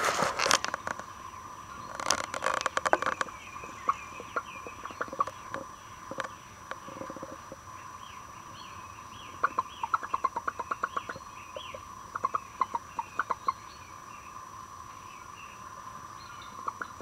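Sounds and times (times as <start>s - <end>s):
steady hum: 0.0s - 17.0s
hen clucking: 1.9s - 7.6s, 9.3s - 13.6s, 16.6s - 17.0s.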